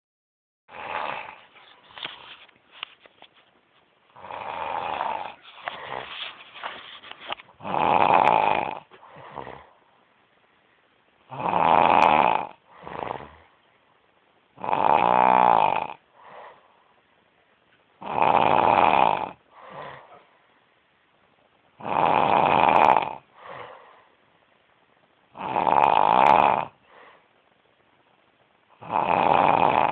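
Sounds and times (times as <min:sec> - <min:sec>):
loud snoring: 0:00.7 - 0:01.5, 0:04.2 - 0:06.3, 0:07.6 - 0:09.8, 0:11.3 - 0:13.5, 0:14.6 - 0:16.6, 0:18.0 - 0:20.2, 0:21.8 - 0:24.0, 0:25.3 - 0:27.0, 0:28.8 - 0:29.9
breathing noises: 0:04.2 - 0:07.8, 0:08.5 - 0:10.0, 0:12.6 - 0:13.7, 0:16.1 - 0:17.1, 0:19.4 - 0:20.7, 0:23.2 - 0:24.3, 0:26.8 - 0:27.5.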